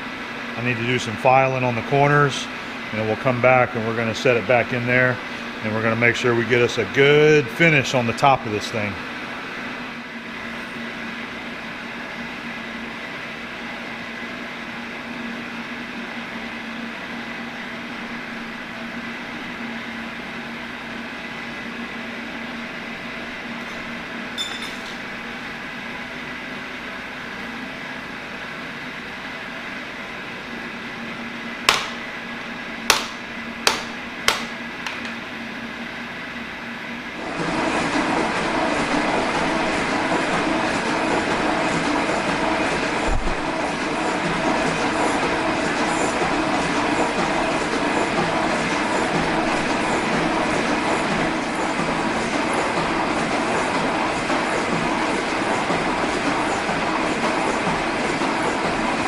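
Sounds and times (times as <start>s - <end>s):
machine hum: 0.0s - 59.0s
sharp knocks: 31.7s - 32.1s, 32.9s - 35.0s.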